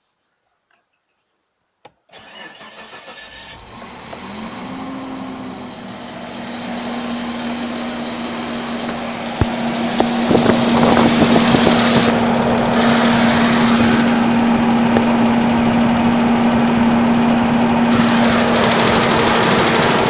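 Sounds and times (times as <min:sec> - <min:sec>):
click: 0:01.8 - 0:02.0
car engine starting and idling: 0:02.1 - 0:20.0.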